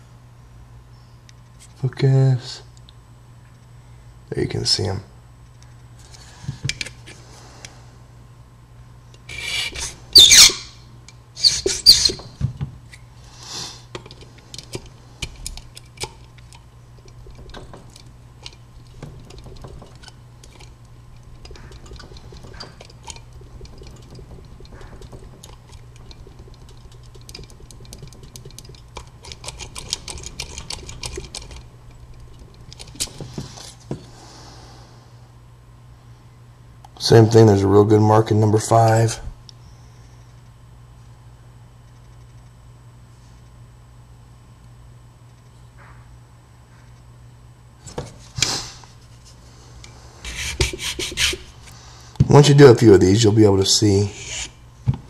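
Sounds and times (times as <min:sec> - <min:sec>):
key scraping in lock: 0:19.2 - 0:33.2
file rasping on key blank: 0:50.3 - 0:51.5.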